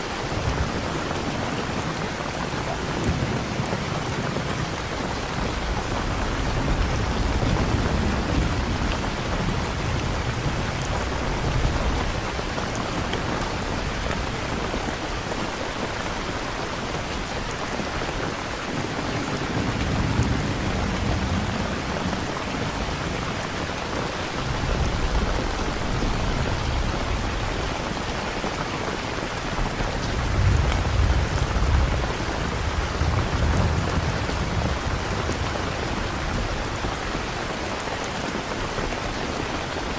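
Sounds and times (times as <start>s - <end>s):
steady rain falling: 0.0s - 39.9s
low rolls of thunder: 0.3s - 14.6s, 18.7s - 27.9s, 29.4s - 37.4s.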